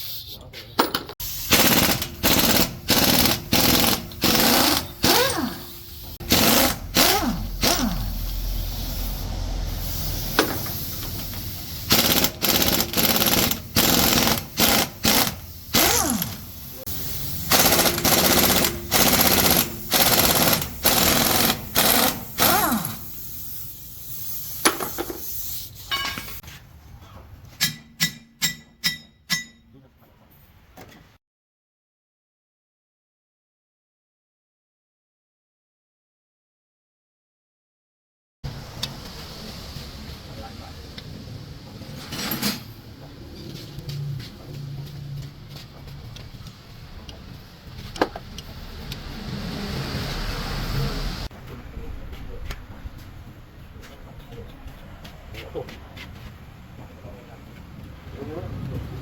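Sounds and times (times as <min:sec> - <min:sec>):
pneumatic impact wrench hammering: 0:00.8 - 0:09.2, 0:09.8 - 0:26.4, 0:27.6 - 0:29.6.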